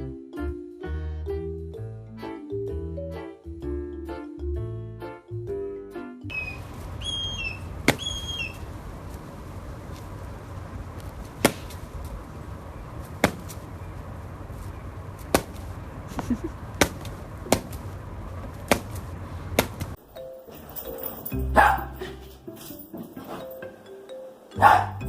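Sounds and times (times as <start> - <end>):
low hiss: 6.3 - 21.4.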